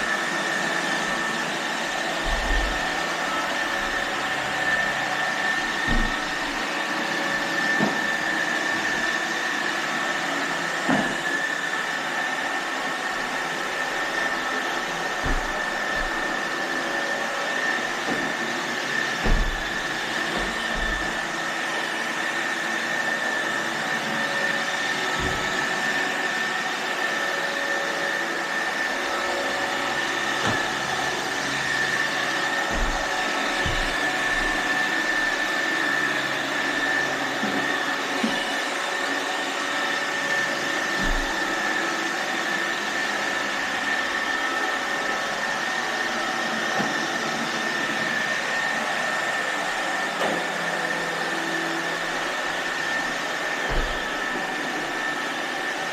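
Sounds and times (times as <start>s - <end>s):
robot vacuum whirring: 0.0s - 55.9s.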